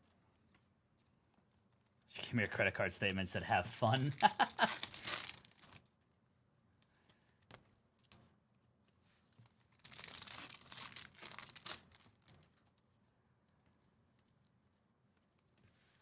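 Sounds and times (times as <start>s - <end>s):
foil wrapper crinkling and tearing: 3.6s - 5.9s, 9.4s - 12.8s.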